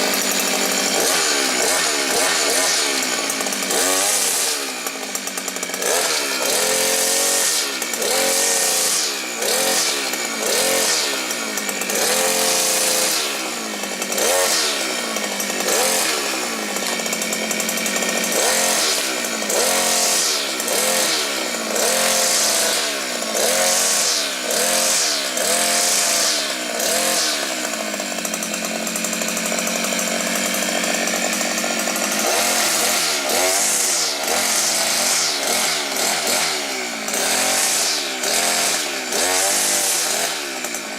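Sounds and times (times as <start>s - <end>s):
brush cutter engine revving: 0.0s - 40.9s.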